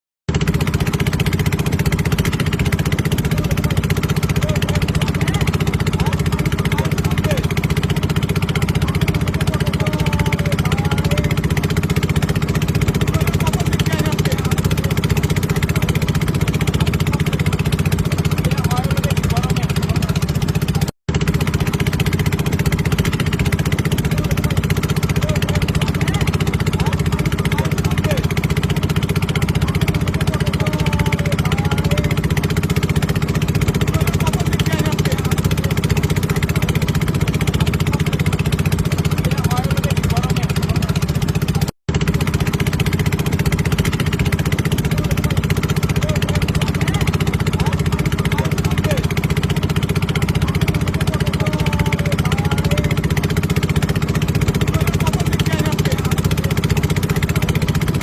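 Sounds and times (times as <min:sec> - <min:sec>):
small engine chugging: 0:00.3 - 0:58.0.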